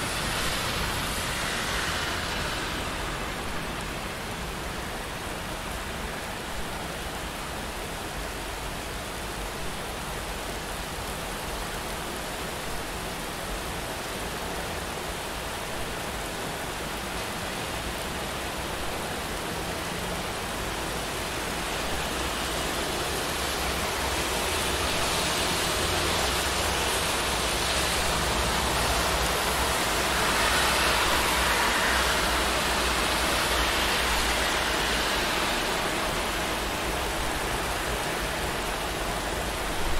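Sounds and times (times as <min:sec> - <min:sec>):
car tyres on wet road: 0:00.0 - 0:39.9
rain on a street: 0:00.0 - 0:39.9.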